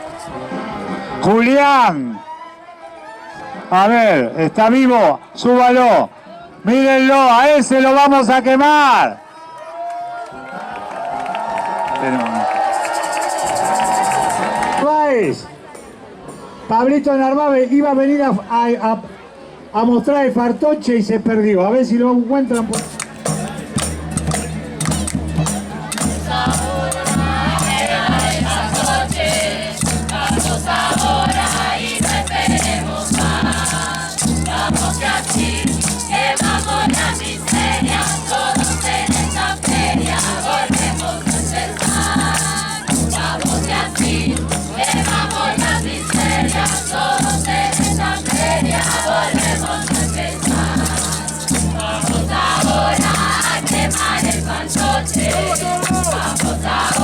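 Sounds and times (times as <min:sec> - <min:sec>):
shakers: 0:12.6 - 0:14.8, 0:22.6 - 0:57.0
people singing: 0:25.0 - 0:57.0.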